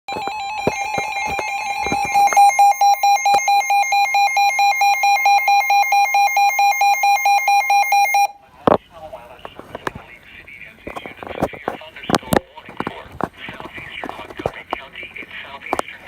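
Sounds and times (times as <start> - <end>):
electronic two-tone alarm: 0.1 - 8.4.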